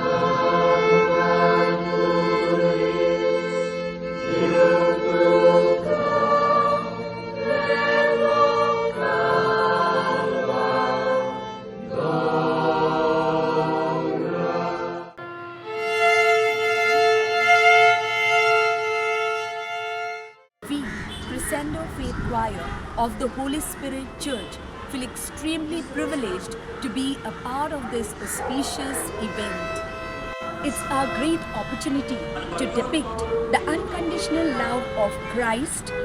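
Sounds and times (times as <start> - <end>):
choir singing sacred music: 0.0 - 15.2, 24.5 - 36.0.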